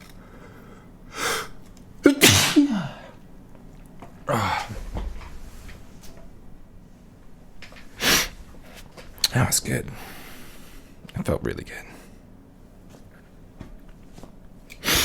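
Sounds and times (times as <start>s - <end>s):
man sneezing: 2.0s - 3.2s
quick intake of breath: 8.0s - 8.6s.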